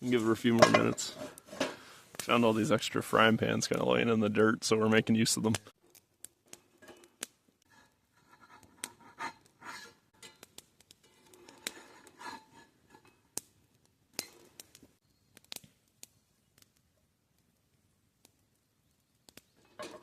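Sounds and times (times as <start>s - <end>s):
cookware clinking and scraping: 0.6s - 1.8s, 6.7s - 7.1s, 7.7s - 13.2s, 19.7s - 20.0s.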